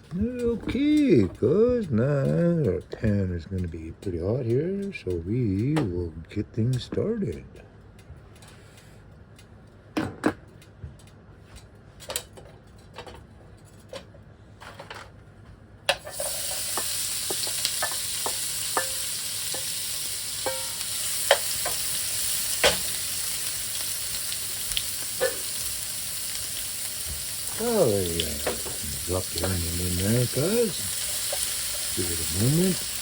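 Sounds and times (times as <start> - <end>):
utensils clicking and knocking: 15.9 - 25.8, 27.0 - 33.0
food sizzling in frying pan: 16.0 - 33.0.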